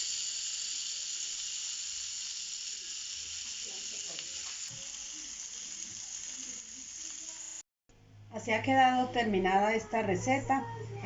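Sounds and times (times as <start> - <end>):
food sizzling: 0.0 - 7.7.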